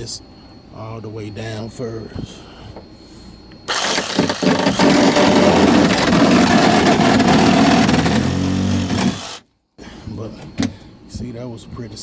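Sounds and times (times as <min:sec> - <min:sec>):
reciprocating saw cutting panel: 0:03.7 - 0:09.4.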